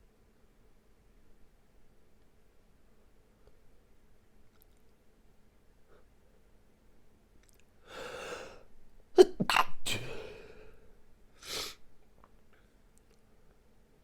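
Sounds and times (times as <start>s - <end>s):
stifled sneezes: 9.2s - 10.6s.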